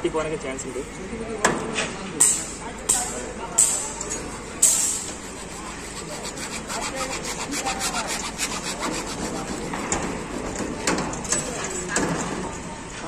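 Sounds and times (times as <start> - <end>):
hand saw cutting plastic pipe: 4.3 - 11.4.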